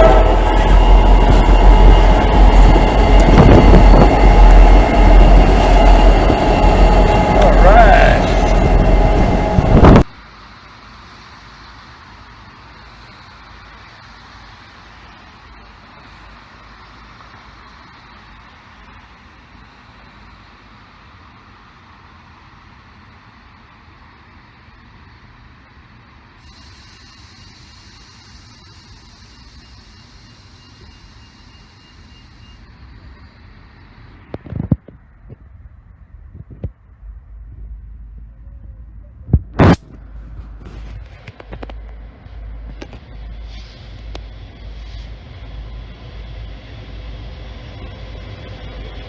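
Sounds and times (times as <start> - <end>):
train horn blast: 0.0 - 10.0
train wheels rumbling on rails: 0.0 - 49.0.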